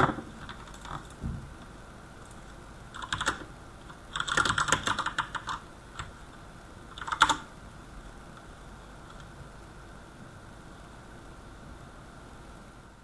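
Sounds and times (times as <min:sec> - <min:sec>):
typing on computer keyboard: 0:02.3 - 0:06.1, 0:06.9 - 0:07.5.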